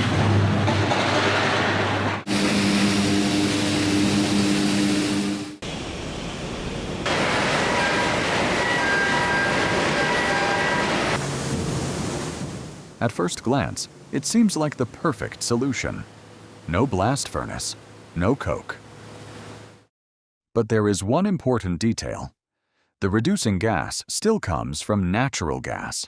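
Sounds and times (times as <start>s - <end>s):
industrial machinery rushing: 0.0s - 12.5s.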